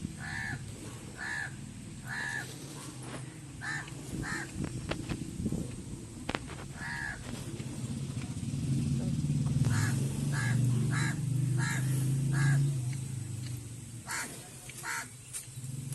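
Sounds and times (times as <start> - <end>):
crows cawing: 0.2 - 2.6, 3.6 - 4.6, 6.7 - 7.3, 9.7 - 12.7, 14.0 - 15.2.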